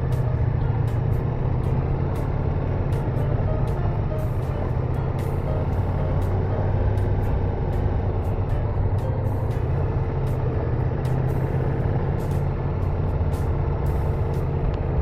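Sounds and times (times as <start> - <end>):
motorcycle engine cruising: 0.0 - 15.0.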